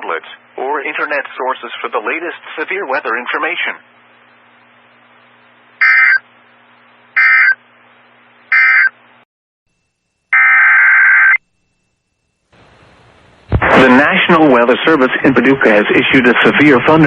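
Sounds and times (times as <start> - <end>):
faint radio hiss: 0.0 - 9.2, 12.4 - 17.0
digital data tone bursts: 5.8 - 6.2, 7.2 - 7.6, 8.5 - 8.9.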